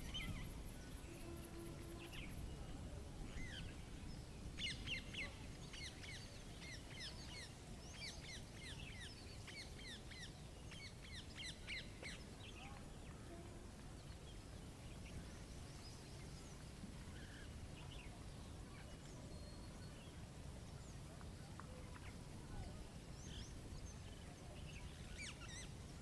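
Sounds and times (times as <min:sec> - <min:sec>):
low background noise: 0:00.0 - 0:26.0
songbirds chirping: 0:00.0 - 0:26.0.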